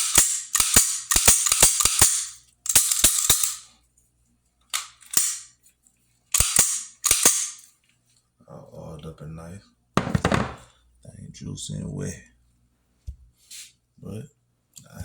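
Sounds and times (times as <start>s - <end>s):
pistol metal clicks: 0.0s - 3.7s, 4.7s - 5.5s, 6.3s - 7.6s.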